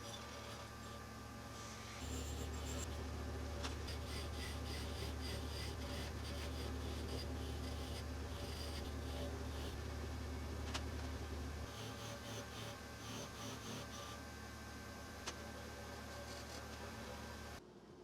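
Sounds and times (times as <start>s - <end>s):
steady low hum: 0.0s - 18.0s
light scraping and rubbing on metal: 1.6s - 9.8s.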